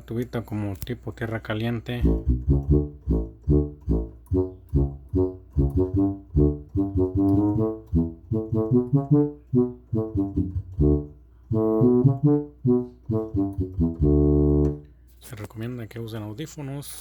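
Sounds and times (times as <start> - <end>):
electronic keyboard tuba bass line: 1.8 - 14.9.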